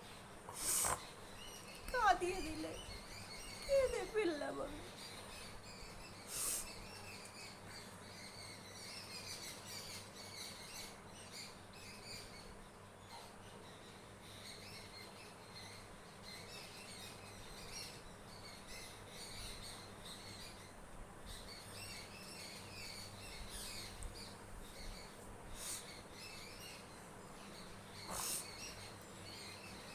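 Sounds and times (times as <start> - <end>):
small birds chirping: 0.0 - 29.9
brief hiss: 0.5 - 1.1, 6.3 - 6.8.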